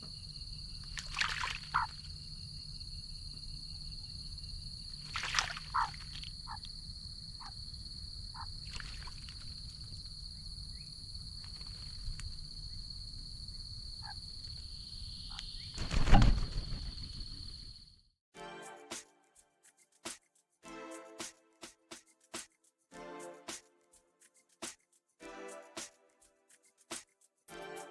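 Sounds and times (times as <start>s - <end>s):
bird splashing and wing-flapping: 0.8s - 2.1s, 5.0s - 6.7s, 8.4s - 10.0s, 15.7s - 17.6s
music: 18.4s - 27.9s.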